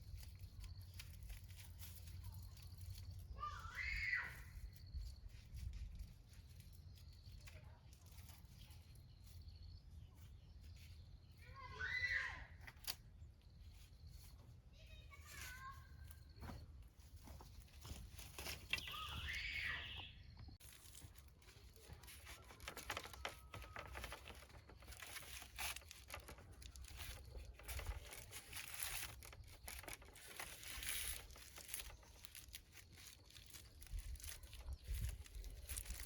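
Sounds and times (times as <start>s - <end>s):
rustling of dry material: 0.0s - 36.0s.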